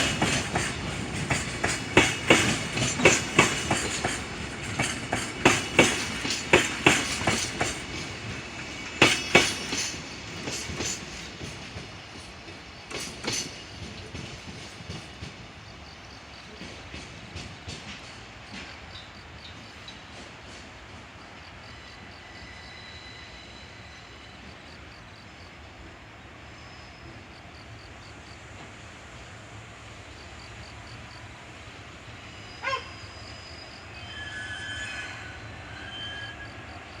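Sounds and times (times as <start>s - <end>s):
train clank: 0.0s - 23.9s
freight train rolling past: 0.0s - 37.0s
wheels squealing: 32.2s - 36.9s.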